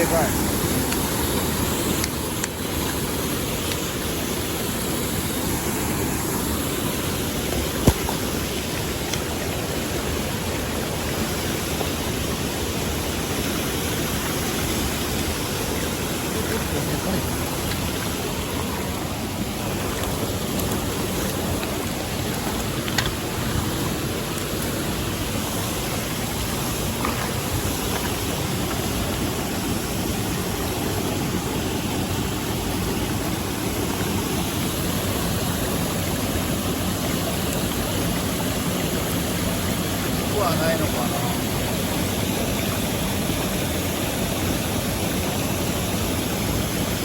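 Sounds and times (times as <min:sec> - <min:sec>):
stream rushing over rocks: 0:00.0 - 0:47.0.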